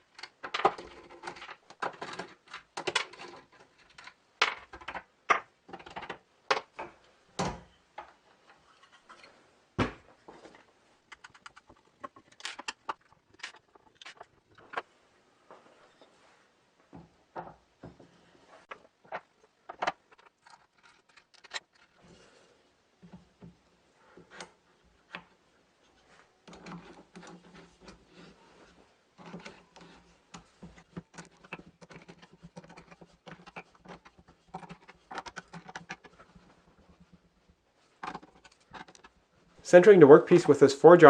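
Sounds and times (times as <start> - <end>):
clicks and scrapes of metal: 19.8 - 22.2.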